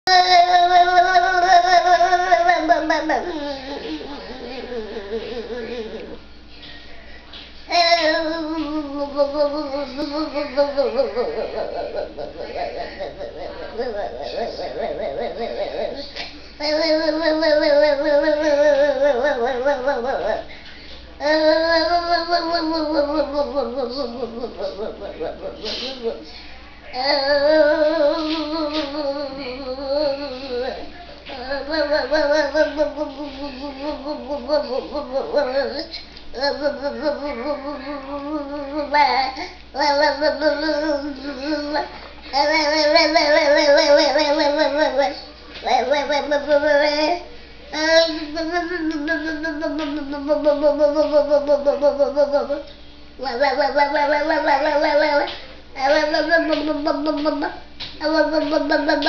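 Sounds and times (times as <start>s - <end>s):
voice singing or howling: 26.9s - 59.0s.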